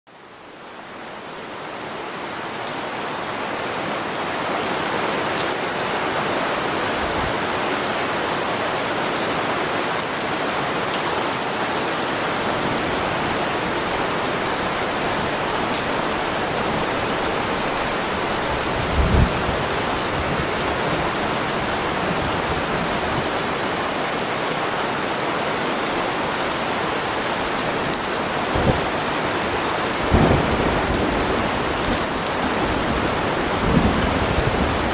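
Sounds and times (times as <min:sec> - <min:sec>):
heavy rain falling: 0:00.1 - 0:34.9
low rumbles of thunder: 0:14.4 - 0:21.2, 0:28.4 - 0:29.3, 0:30.0 - 0:34.9.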